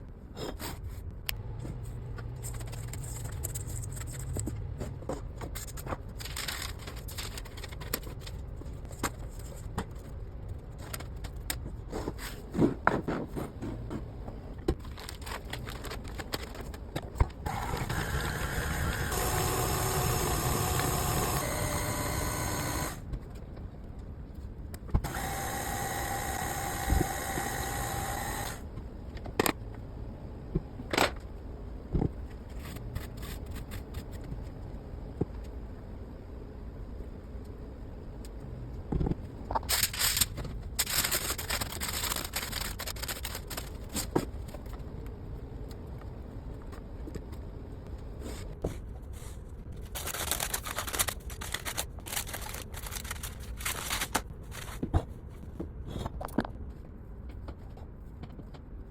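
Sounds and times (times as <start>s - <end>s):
kitchen appliance motor running: 17.5s - 23.0s, 25.0s - 28.6s.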